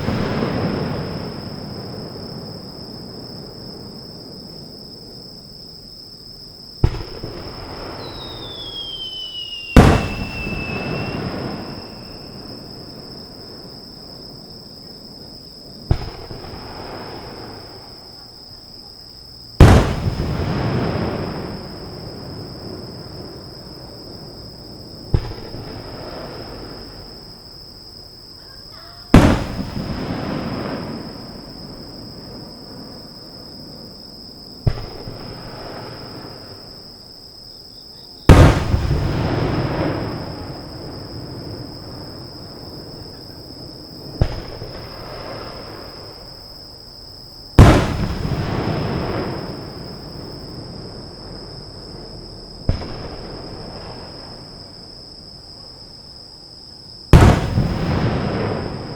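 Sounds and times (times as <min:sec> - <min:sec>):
insect buzz: 0:00.0 - 0:58.9
firework shells bursting: 0:06.8 - 0:12.7, 0:19.6 - 0:21.8, 0:29.1 - 0:31.3, 0:38.3 - 0:40.7, 0:47.6 - 0:50.3, 0:57.1 - 0:58.9
rolling echo: 0:06.8 - 0:14.2, 0:19.6 - 0:27.3, 0:57.2 - 0:58.9.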